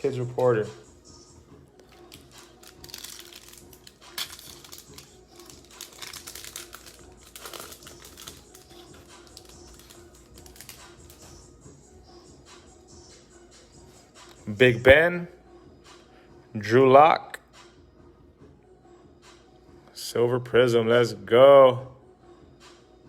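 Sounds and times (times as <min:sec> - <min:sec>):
wrapper crinkling and rustling: 0:01.8 - 0:11.2.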